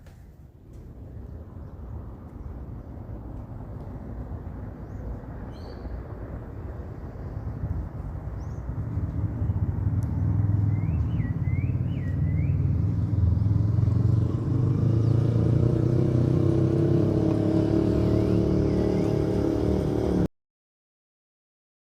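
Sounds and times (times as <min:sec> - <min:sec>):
vehicle engine running: 0:06.5 - 0:20.3.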